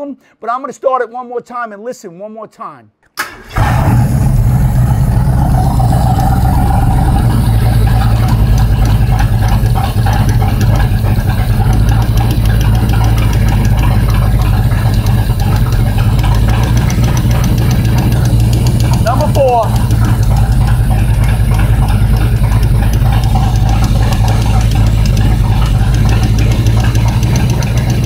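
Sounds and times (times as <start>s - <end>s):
engine idling: 3.3s - 28.0s
fast rhythmic lifter ticking: 4.8s - 28.0s.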